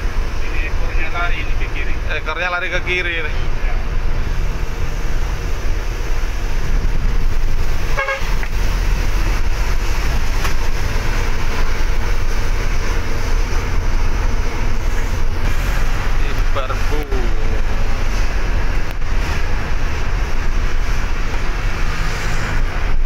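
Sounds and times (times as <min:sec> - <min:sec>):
bus engine and road noise: 0:00.0 - 0:23.0
vehicle horn tooting: 0:07.9 - 0:08.4.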